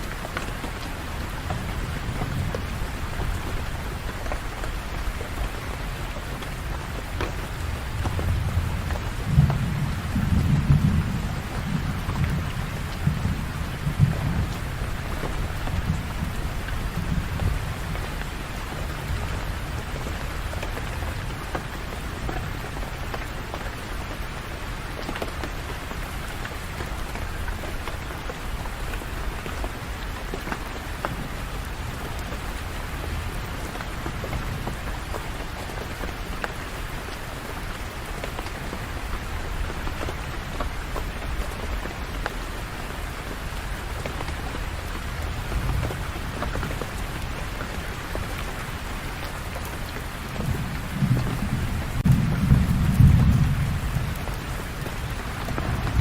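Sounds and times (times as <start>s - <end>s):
steady rain falling: 0.0s - 56.0s
low rumble of thunder: 1.0s - 23.3s, 43.7s - 56.0s.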